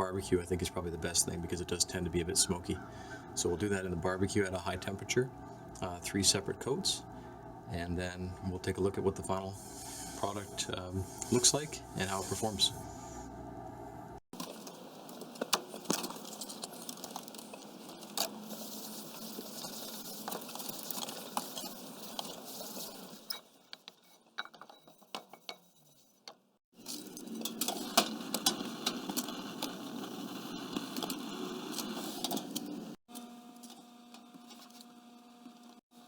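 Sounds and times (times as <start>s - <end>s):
cast iron pan clinks and scrapes: 23.2s - 26.1s.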